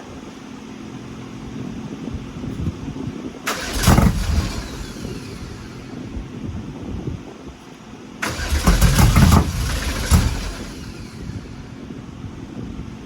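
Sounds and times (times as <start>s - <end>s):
engine burst: 3.4s - 6.2s, 8.2s - 12.2s
starter cranking engine: 3.5s - 6.0s, 8.2s - 11.9s.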